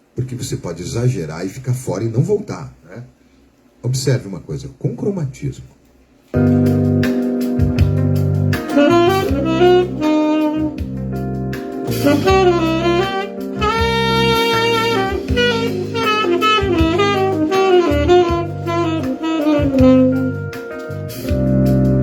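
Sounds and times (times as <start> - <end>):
jazz accompaniment: 6.3 - 22.0
light drums: 6.4 - 22.0
low bass notes: 6.4 - 22.0
saxophone playing runs: 8.6 - 11.2, 11.8 - 20.9.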